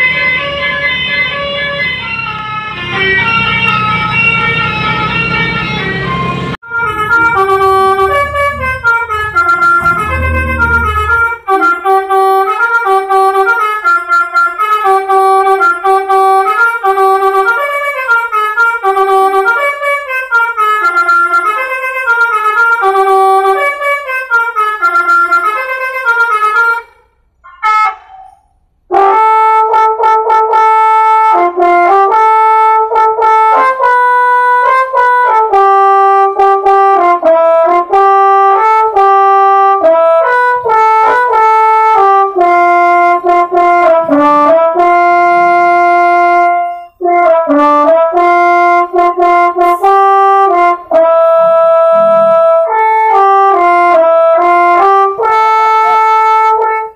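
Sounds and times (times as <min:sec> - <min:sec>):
multi-tone air horn playing a tune: 0:00.0 - 0:28.3, 0:28.9 - 0:56.9.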